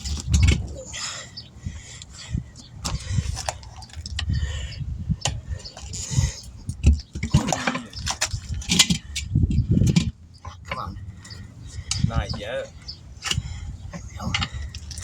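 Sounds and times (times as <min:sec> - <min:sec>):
knocks and clicks handling tire: 0:02.0 - 0:04.4, 0:05.2 - 0:06.0, 0:06.6 - 0:12.5, 0:13.2 - 0:15.0.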